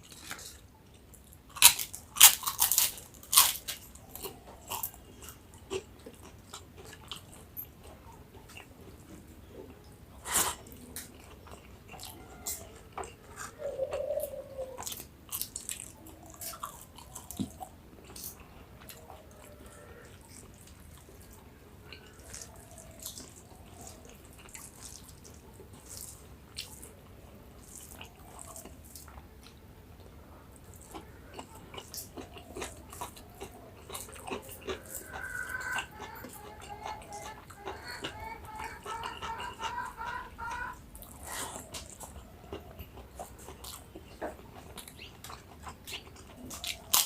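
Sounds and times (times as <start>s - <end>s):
chewing and crunching food: 0.0s - 47.0s.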